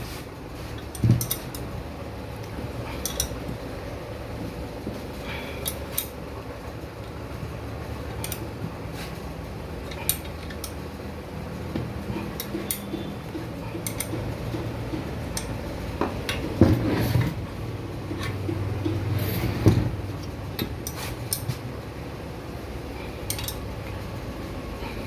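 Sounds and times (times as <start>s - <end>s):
steady low hum: 0.0s - 25.0s
metallic clinks of tools handled: 23.3s - 23.6s.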